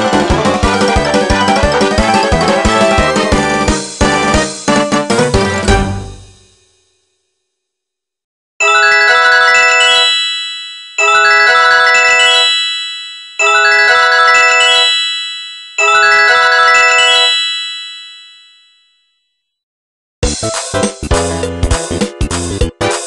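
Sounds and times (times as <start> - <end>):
bell-like mallet ringtone: 8.6 - 19.4.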